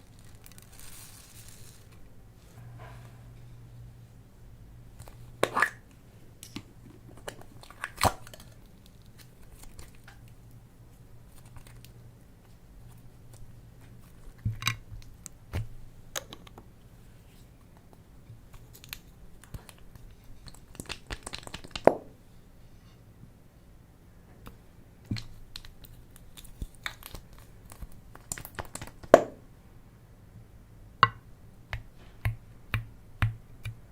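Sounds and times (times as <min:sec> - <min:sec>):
slime crackling: 0:25.1 - 0:29.3.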